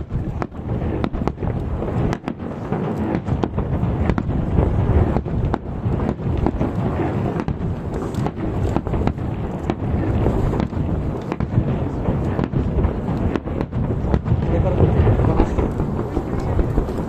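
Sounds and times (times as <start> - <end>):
fireworks cracks and bangs: 0.0 - 17.0
low rumble of booms: 0.0 - 17.0.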